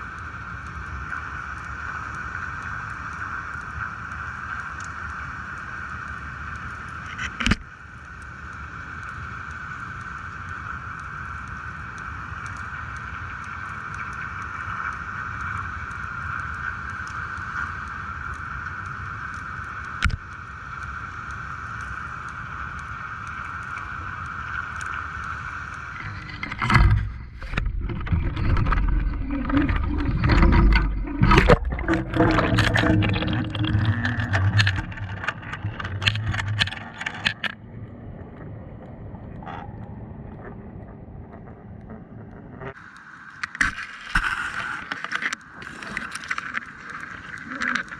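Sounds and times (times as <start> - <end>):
loud irregular knocks and thumps: 26.0 - 37.4.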